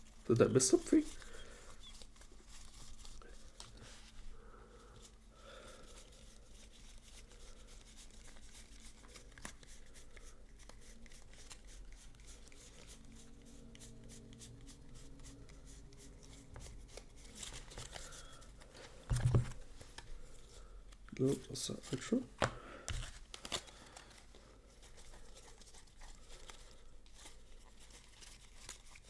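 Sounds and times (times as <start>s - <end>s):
card rustle: 0.0s - 4.2s, 5.8s - 29.0s
trading cards being handled: 7.6s - 29.0s.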